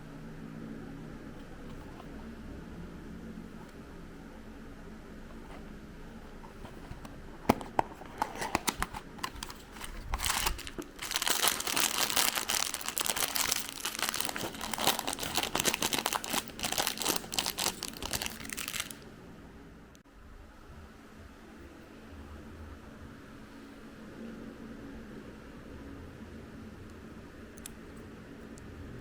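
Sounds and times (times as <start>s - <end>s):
packaging crinkling: 8.1s - 19.0s.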